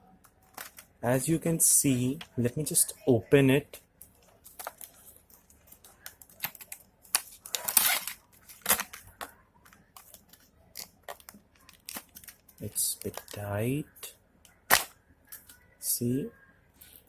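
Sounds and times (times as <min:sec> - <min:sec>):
packaging clicks and crackles: 0:00.2 - 0:01.0, 0:04.0 - 0:13.5
packaging rustle: 0:04.2 - 0:13.4.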